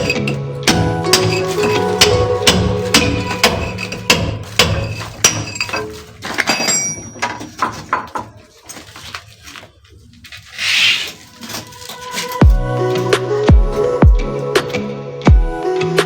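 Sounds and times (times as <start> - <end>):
glassy clinks: 0.0 - 8.0.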